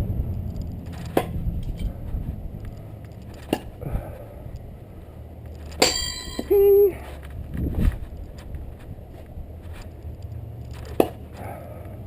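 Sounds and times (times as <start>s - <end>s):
low rumble: 0.0s - 12.0s
knives striking target: 5.7s - 6.7s.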